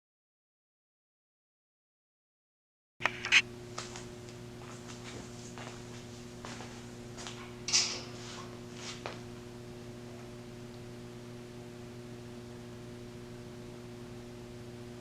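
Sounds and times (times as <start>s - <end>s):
box fan motor humming: 3.0s - 15.0s.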